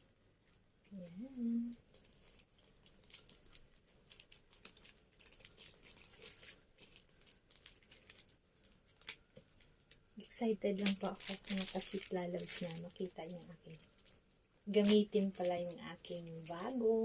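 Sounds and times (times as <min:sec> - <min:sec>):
packaging crinkling: 0:01.8 - 0:16.8.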